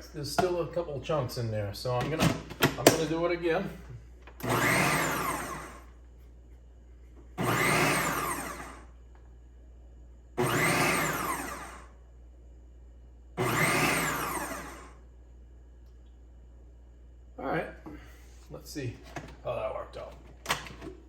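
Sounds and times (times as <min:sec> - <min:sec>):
food processor pulsing: 0:04.4 - 0:05.9, 0:07.4 - 0:09.0, 0:10.4 - 0:12.0, 0:13.4 - 0:15.0.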